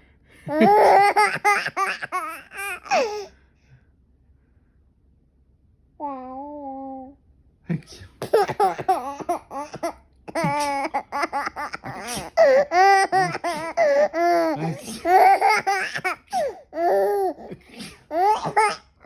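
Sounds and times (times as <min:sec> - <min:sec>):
baby laughing: 0:00.5 - 0:03.3, 0:08.2 - 0:18.9
baby breathing: 0:08.3 - 0:18.7.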